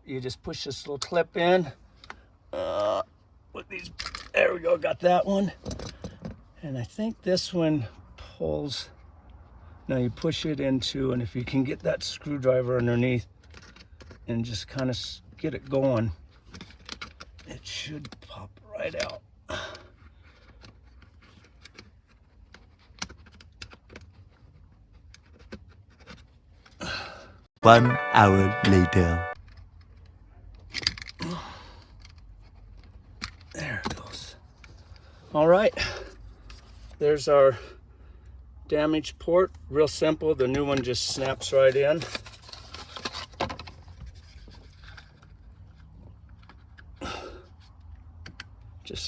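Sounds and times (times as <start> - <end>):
plastic clicks and scrapes: 13.2 - 18.3, 19.9 - 26.8.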